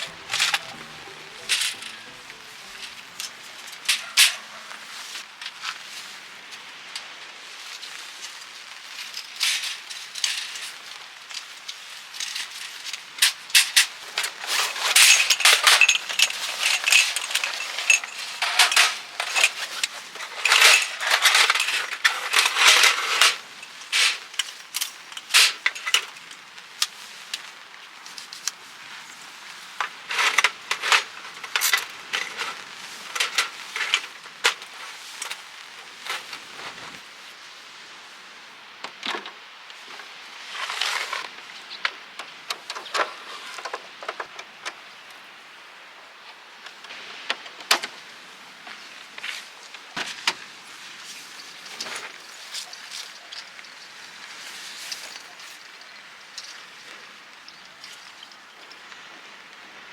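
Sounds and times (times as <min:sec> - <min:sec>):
gear clicking and rattling: 0:13.6 - 0:26.4, 0:51.2 - 0:58.8.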